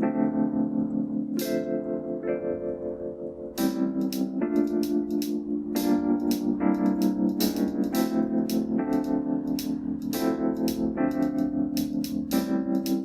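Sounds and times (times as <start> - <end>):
electric piano chords: 0.0 - 13.0
hi-hat ticks: 3.6 - 13.0.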